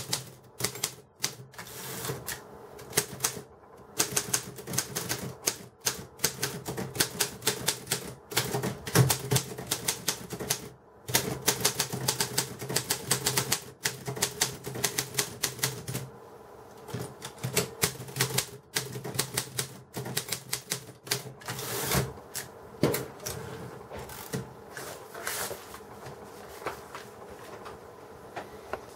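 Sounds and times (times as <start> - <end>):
manual typewriter key strikes: 0.0 - 1.5.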